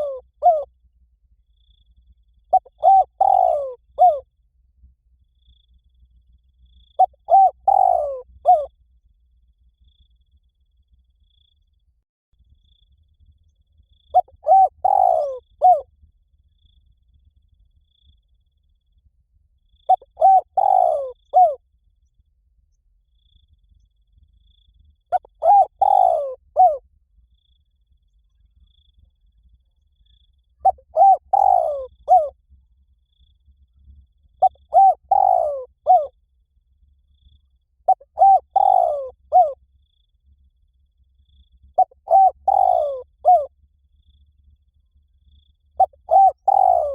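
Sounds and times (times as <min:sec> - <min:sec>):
dove cooing: 0:00.0 - 0:00.7, 0:02.5 - 0:04.2, 0:07.0 - 0:08.7, 0:14.1 - 0:15.8, 0:19.9 - 0:21.6, 0:25.1 - 0:26.8, 0:30.6 - 0:32.4, 0:34.4 - 0:36.2, 0:37.9 - 0:39.6, 0:41.8 - 0:43.5, 0:45.8 - 0:46.9.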